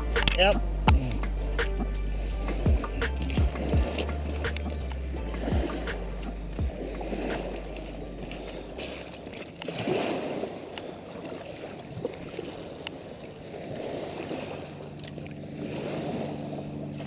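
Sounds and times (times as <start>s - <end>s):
low steady hum: 0.0s - 17.0s
small waves washing on beach: 7.1s - 17.0s.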